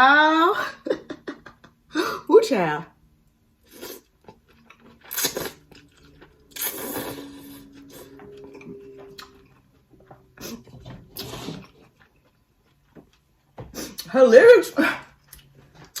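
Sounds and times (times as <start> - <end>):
person chewing and slurping: 3.6 - 9.7, 10.3 - 14.1
faint steady low tone: 5.4 - 11.0.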